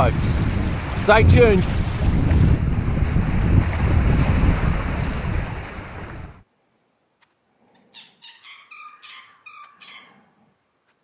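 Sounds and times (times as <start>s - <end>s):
wind buffeting microphone: 0.0s - 6.4s.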